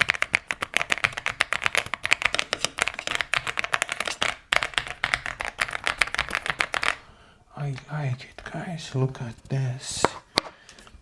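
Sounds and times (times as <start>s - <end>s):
mechanical keyboard typing: 0.0s - 7.0s.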